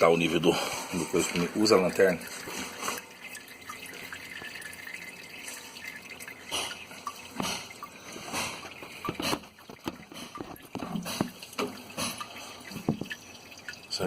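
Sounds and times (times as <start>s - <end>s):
fluid trickling and dripping: 0.0s - 14.0s
light knocks and splashes: 6.5s - 13.2s.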